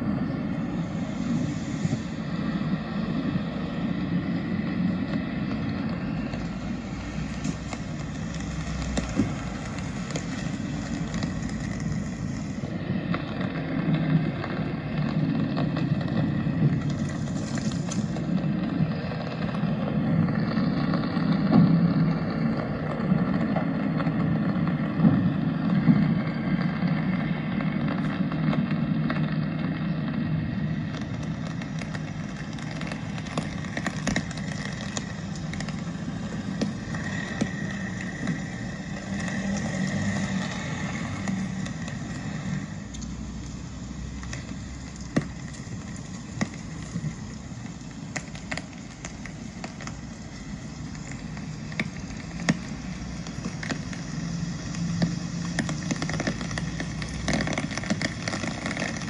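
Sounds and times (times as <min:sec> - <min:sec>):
rain: 0:00.0 - 0:59.0
traffic: 0:00.0 - 0:59.0
light rain taps: 0:30.9 - 0:59.0.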